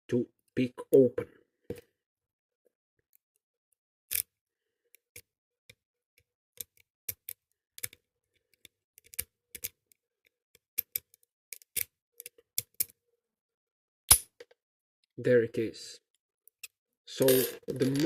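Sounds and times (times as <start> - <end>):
lock pick clicking in padlock: 4.1 - 4.3, 10.5 - 13.0.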